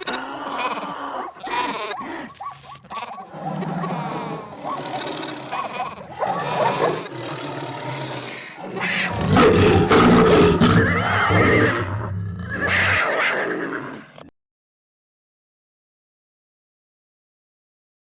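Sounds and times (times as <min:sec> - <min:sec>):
cartoon animal calls: 0:00.0 - 0:07.2, 0:08.6 - 0:12.0, 0:12.6 - 0:14.2
deep roar: 0:03.3 - 0:13.0.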